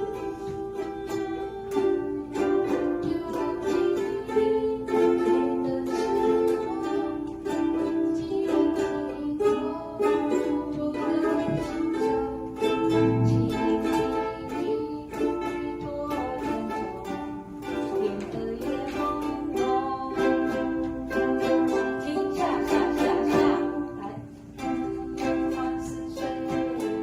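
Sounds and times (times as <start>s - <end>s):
ukulele strumming: 0.0s - 27.0s.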